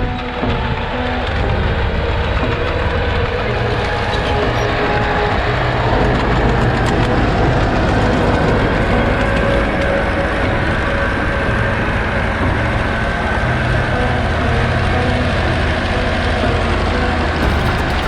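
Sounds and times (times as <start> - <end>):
tractor engine droning: 0.0 - 18.0.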